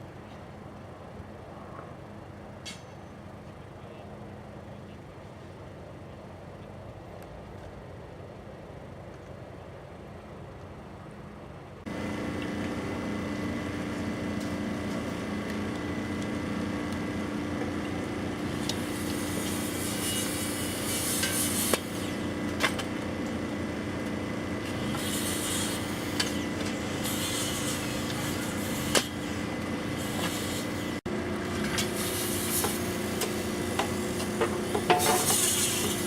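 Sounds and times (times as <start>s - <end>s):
construction machinery running: 10.1s - 36.0s.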